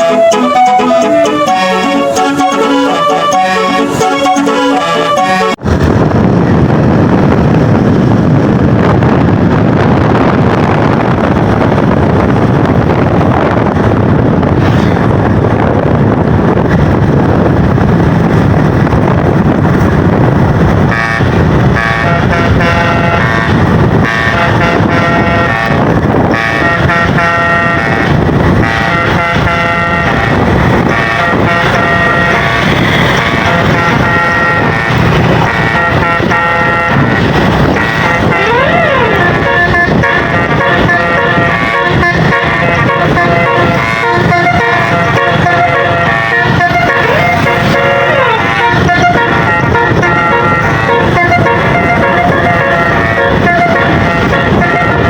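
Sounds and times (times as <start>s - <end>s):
bus horn playing a tune: 0.0s - 5.7s, 18.3s - 55.0s
vehicle engine and road noise: 0.0s - 55.0s.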